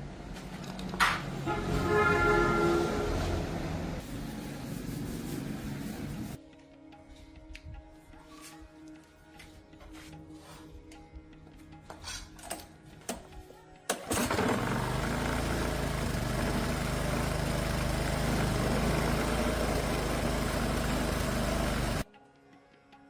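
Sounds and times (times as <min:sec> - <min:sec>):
music: 0:04.0 - 0:14.3, 0:22.0 - 0:23.0
chainsaw engine running: 0:14.0 - 0:22.0.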